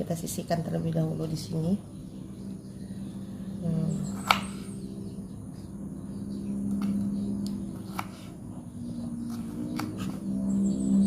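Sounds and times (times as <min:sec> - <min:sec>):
music of long held notes: 0:08.5 - 0:11.0.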